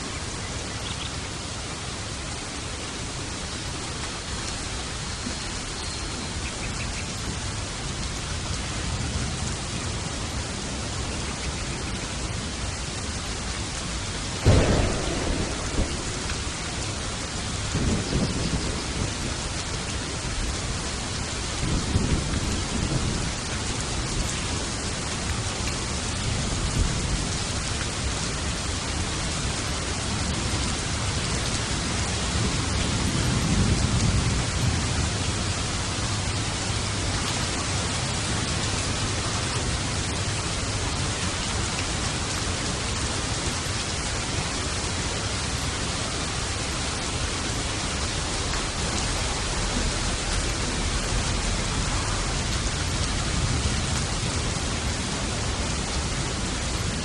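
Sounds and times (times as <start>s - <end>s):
steady rain: 0.0s - 57.0s
thunder: 14.4s - 19.5s.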